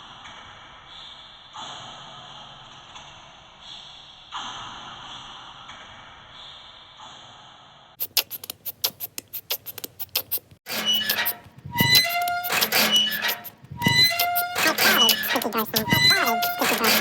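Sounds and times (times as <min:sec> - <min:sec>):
chopped squeaks: 0:08.0 - 0:17.0
sharp clicks: 0:08.0 - 0:17.0.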